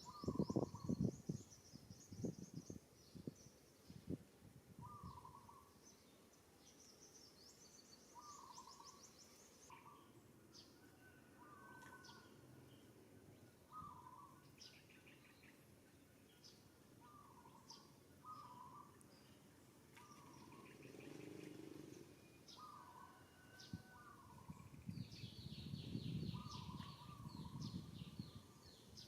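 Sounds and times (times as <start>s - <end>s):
high chirping bird trills: 6.7s - 15.6s, 16.3s - 29.0s.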